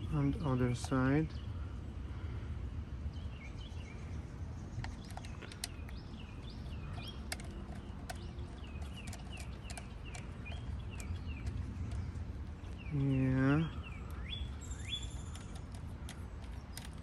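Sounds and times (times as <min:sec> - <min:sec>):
bird chirping: 0:00.0 - 0:17.0
low background rumble: 0:00.0 - 0:17.0
sharp clicks: 0:04.8 - 0:12.9.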